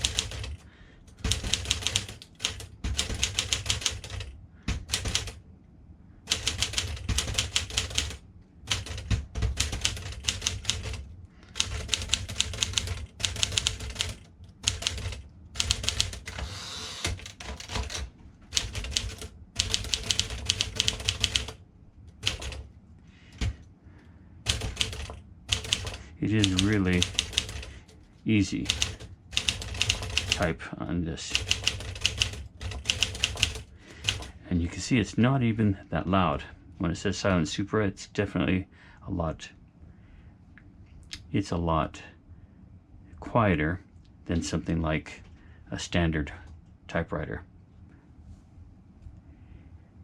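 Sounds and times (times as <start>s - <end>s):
typewriter keystrokes: 0.0s - 0.6s, 1.2s - 5.4s, 6.3s - 11.0s, 11.6s - 16.4s, 17.0s - 21.6s, 22.2s - 22.6s, 24.5s - 27.7s, 28.6s - 30.5s, 31.3s - 34.3s.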